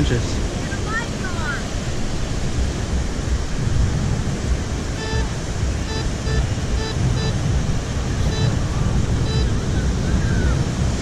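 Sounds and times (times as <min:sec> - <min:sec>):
surf: 0:00.0 - 0:11.0
wind buffeting microphone: 0:00.0 - 0:11.0
metal detector beeps: 0:05.0 - 0:10.1.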